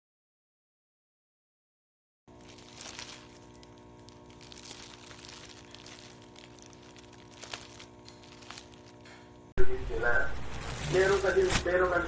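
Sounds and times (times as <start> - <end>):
parchment paper crinkling: 2.3 - 9.5, 10.3 - 12.0
steady low hum: 2.3 - 12.0.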